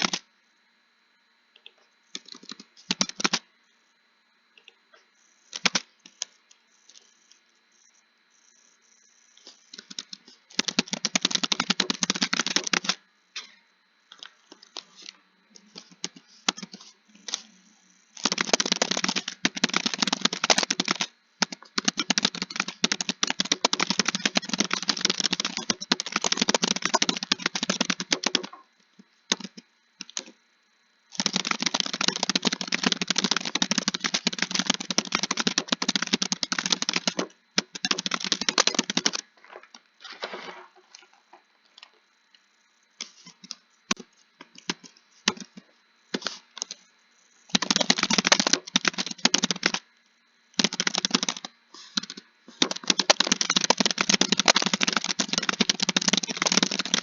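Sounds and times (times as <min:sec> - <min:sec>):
computer keyboard typing: 0:00.0 - 0:00.2, 0:02.1 - 0:03.4, 0:05.6 - 0:06.3, 0:09.7 - 0:13.0, 0:18.1 - 0:28.6, 0:29.3 - 0:30.3, 0:31.1 - 0:39.2, 0:47.5 - 0:49.8, 0:50.6 - 0:57.0.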